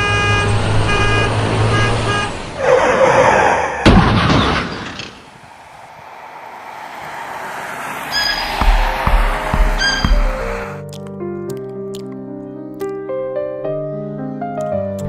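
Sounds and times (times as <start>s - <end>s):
horn-like tone: 0.0s - 2.4s, 9.3s - 10.8s
sharp crack: 3.8s - 12.2s
rising whoosh: 5.0s - 10.9s
low hum: 5.2s - 10.8s.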